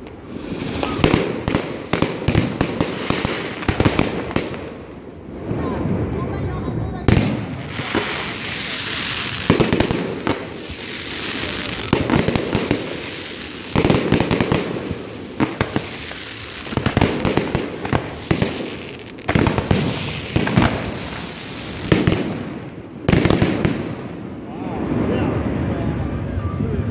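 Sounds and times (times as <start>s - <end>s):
fireworks bursting: 0.0s - 6.2s, 7.0s - 24.4s
fireworks crackling: 0.0s - 25.0s
steady hiss: 7.5s - 22.7s.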